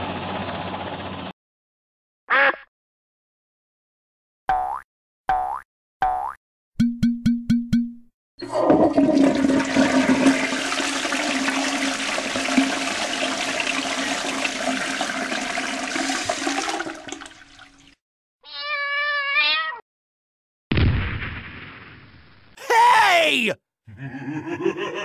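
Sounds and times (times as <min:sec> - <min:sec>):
toilet flushing: 0:08.4 - 0:18.0
cat meowing: 0:18.4 - 0:19.8.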